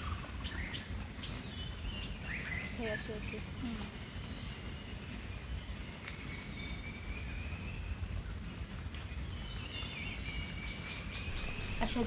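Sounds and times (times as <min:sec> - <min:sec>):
birds whistling: 0:09.3 - 0:12.0
low rumble: 0:11.3 - 0:12.0.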